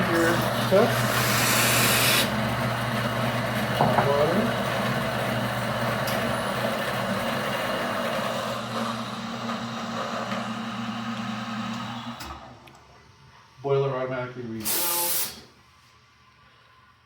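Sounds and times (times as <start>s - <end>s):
pump humming: 0.0s - 12.6s
hot water hissing from tap: 0.1s - 2.4s, 14.6s - 15.4s.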